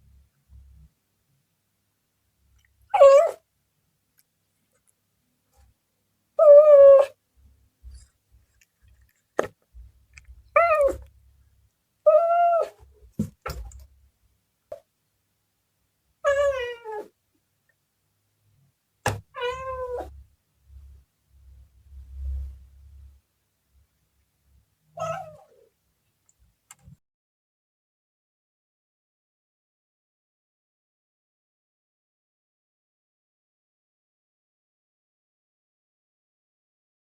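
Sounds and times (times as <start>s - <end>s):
cat meowing: 2.9s - 3.4s, 6.4s - 7.2s, 10.6s - 11.1s, 12.1s - 12.8s, 16.2s - 17.1s, 19.3s - 20.1s, 25.0s - 25.7s.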